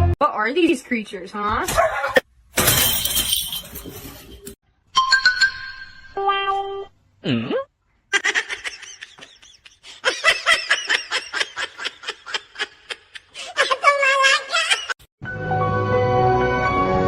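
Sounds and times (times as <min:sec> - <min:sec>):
laughter: 0:01.7 - 0:02.2, 0:08.1 - 0:15.0.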